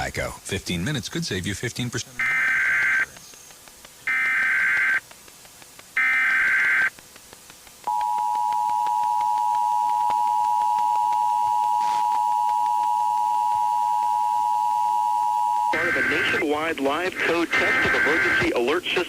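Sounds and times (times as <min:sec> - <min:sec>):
two-tone attention signal: 0:07.9 - 0:16.4.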